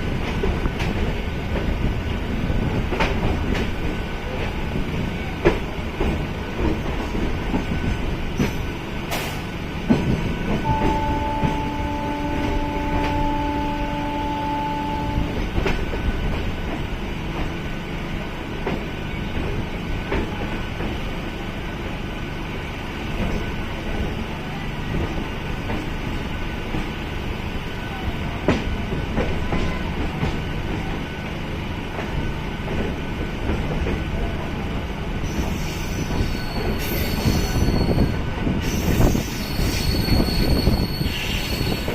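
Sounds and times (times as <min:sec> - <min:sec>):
train wheels rumbling and rattling: 0:00.0 - 0:41.9
train horn: 0:10.5 - 0:15.8.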